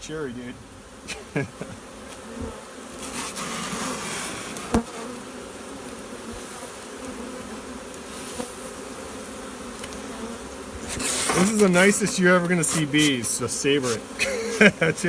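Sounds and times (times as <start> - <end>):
bee swarm buzzing: 0.0 - 15.0.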